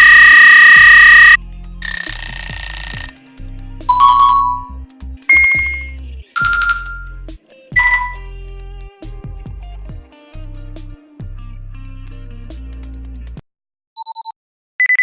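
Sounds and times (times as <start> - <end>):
electronic alert chimes: 0.0 - 2.1, 3.9 - 7.2, 7.8 - 8.3.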